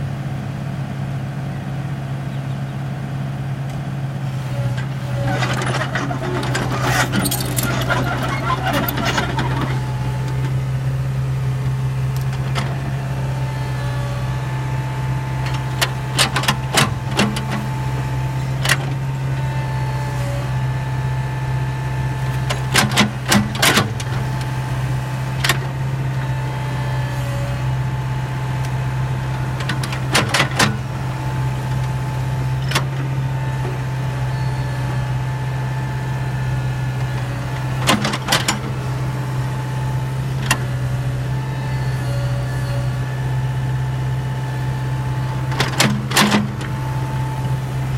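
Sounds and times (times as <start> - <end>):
excavator diesel engine running: 0.0 - 47.9
rattling clatter: 5.2 - 10.5.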